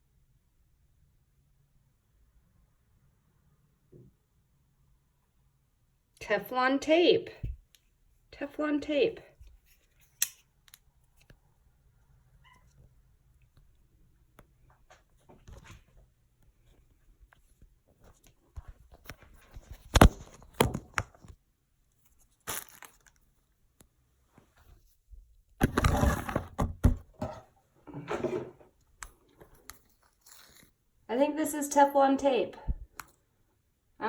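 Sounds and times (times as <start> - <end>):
plastic packaging rustling: 22.1 - 23.4, 25.6 - 26.9
packaging crinkling: 22.3 - 23.3.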